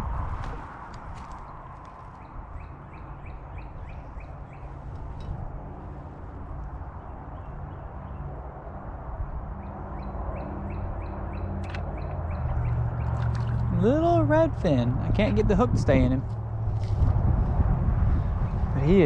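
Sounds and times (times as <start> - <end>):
steady low rumble: 0.0 - 9.6, 10.8 - 19.0
bird chirping: 1.3 - 5.0, 9.6 - 15.5.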